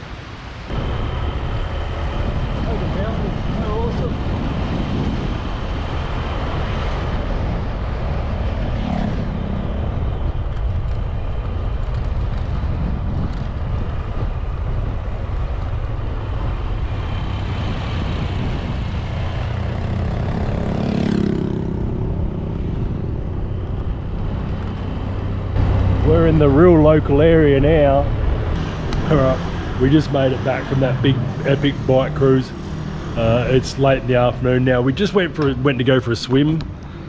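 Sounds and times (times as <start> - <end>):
road noise: 0.0 - 37.0
wind buffeting microphone: 0.0 - 37.0
scooter engine: 8.4 - 31.5
passing whoosh: 12.7 - 35.4.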